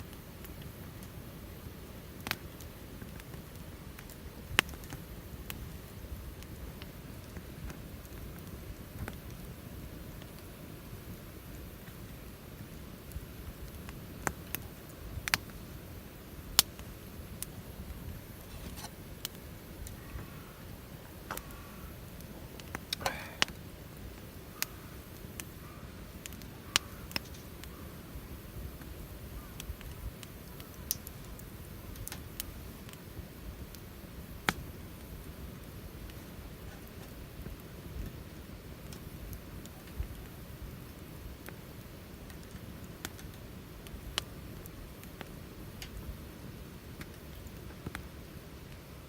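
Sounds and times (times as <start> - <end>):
wood fire crackling: 0.0 - 49.0
sharp pops and snaps: 13.1 - 15.6, 22.6 - 25.6, 26.2 - 27.8, 29.6 - 33.1, 34.4 - 35.1, 42.2 - 46.1.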